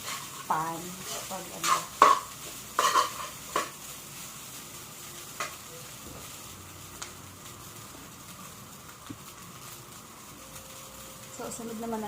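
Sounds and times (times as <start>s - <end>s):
spatula scraping pan: 0.0s - 3.9s
rice sizzling: 0.0s - 12.0s.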